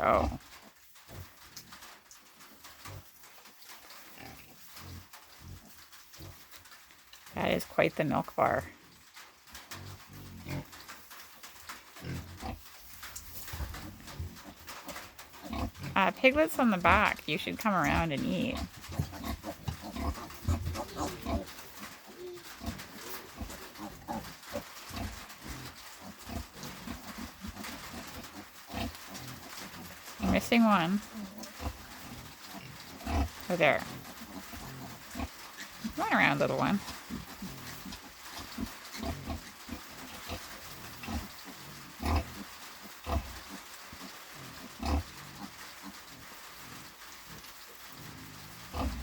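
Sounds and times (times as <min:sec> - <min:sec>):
pig grunting: 0:15.4 - 0:16.1, 0:17.8 - 0:43.6, 0:44.4 - 0:45.6, 0:48.0 - 0:49.0
sow grunting: 0:17.8 - 0:24.4.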